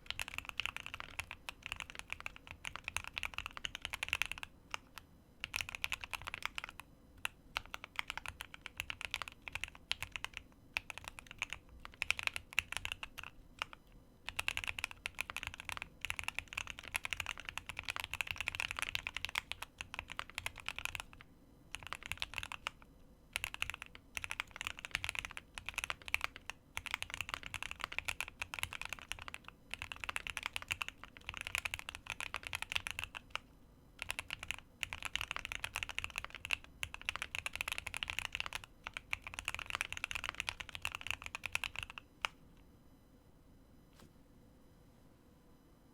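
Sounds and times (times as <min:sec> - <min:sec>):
typing on mechanical keyboard: 0:00.0 - 0:42.4.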